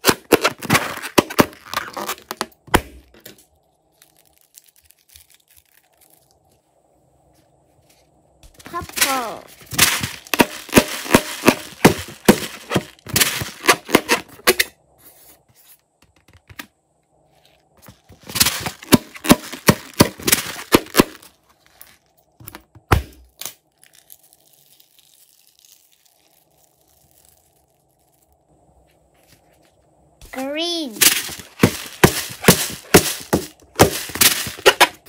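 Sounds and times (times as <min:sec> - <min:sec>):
slime crackling and popping: 0:03.9 - 0:06.5, 0:23.3 - 0:28.5.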